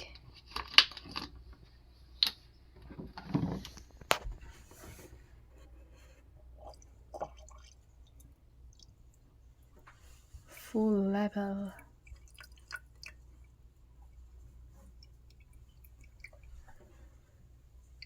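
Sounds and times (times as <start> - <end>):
water pouring into reservoir: 6.6 - 9.2, 11.7 - 17.0.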